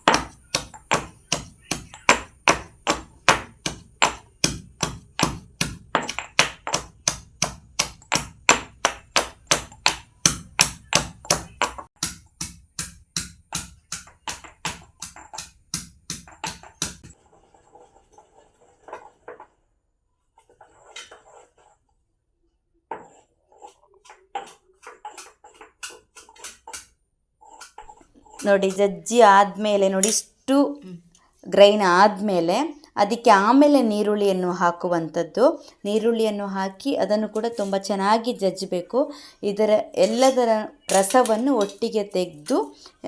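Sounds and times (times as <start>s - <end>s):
pounding on grinding stone: 0.0s - 17.2s
scattered knocks and handling: 0.0s - 17.2s, 40.0s - 42.6s.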